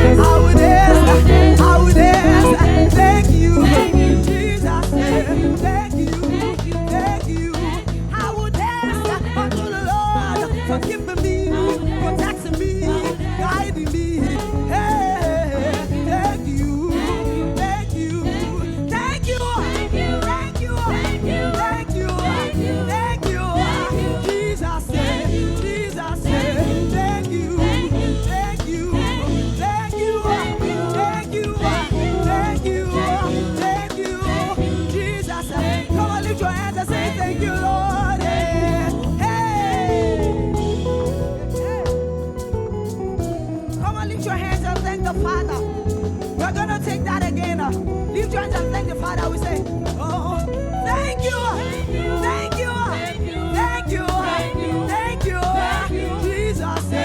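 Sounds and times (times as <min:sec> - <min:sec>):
person singing: 0:00.0 - 0:42.2
gospel band playing upbeat song: 0:00.0 - 0:57.0.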